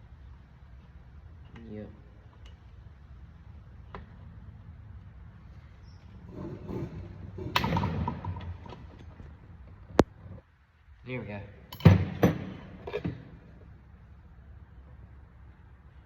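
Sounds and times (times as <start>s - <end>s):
hand tools clicking and clattering: 11.7s - 13.6s.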